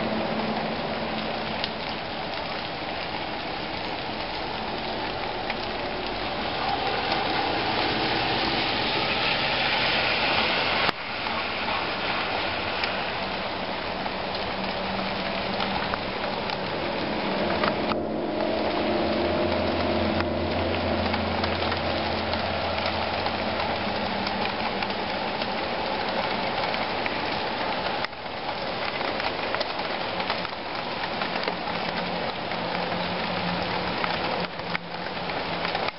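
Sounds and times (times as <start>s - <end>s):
constant hiss: 0.0s - 35.9s
low trumpet-like drone: 3.0s - 13.7s, 14.6s - 23.9s.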